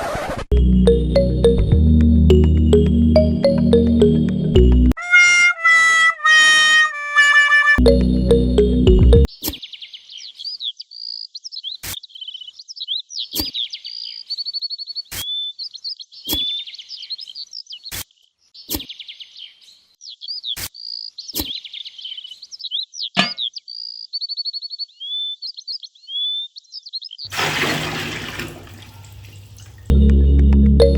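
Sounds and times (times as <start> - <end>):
small birds chirping: 9.3 - 27.3.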